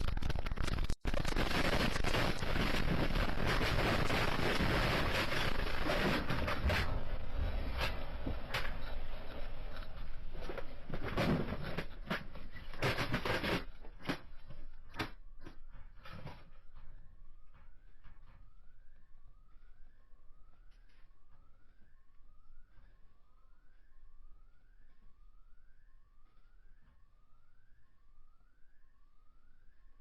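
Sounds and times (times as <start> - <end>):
objects rattling and crashing: 0.0 - 14.7
earthquake rumble: 0.0 - 18.6
alarm siren in rising sweeps: 1.4 - 9.2, 15.8 - 30.0.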